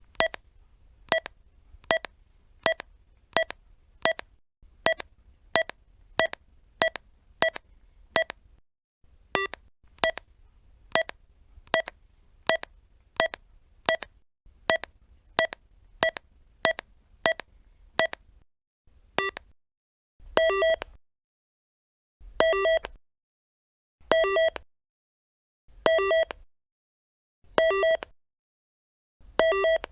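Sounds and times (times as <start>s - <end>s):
walkie-talkie key beeps: 0.1s - 0.4s, 1.1s - 1.3s, 1.9s - 7.6s, 8.2s - 8.4s, 9.4s - 10.3s, 11.0s - 14.1s, 14.7s - 18.2s, 19.2s - 19.5s, 20.4s - 20.9s, 22.4s - 23.0s, 24.1s - 24.6s, 25.9s - 26.4s, 27.6s - 28.1s, 29.4s - 29.9s.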